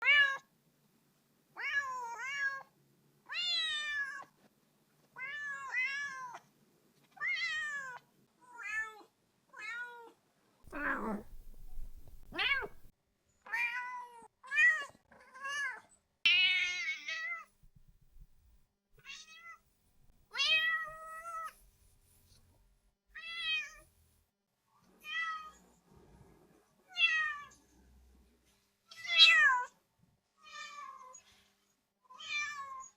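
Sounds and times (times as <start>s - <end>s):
cat meowing: 10.7s - 12.9s.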